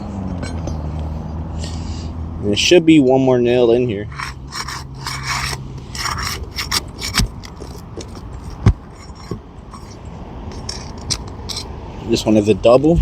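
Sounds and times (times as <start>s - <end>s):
pry tool scraping shingles: 4.1s - 11.8s.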